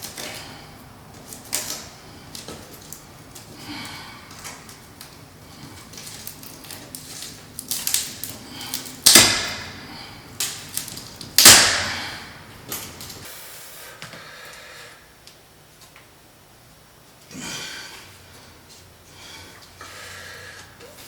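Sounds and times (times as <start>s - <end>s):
loud sharp ringing hits: 11.4s - 12.4s.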